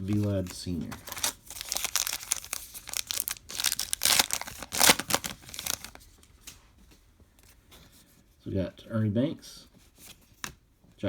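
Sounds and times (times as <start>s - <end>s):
wrapper tearing and crinkling: 0.0s - 6.0s.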